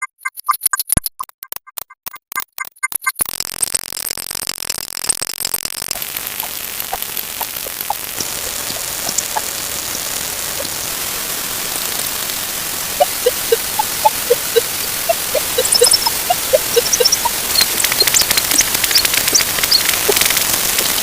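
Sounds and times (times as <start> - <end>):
static-like hiss: 5.8 - 21.0
short blips: 5.9 - 21.0.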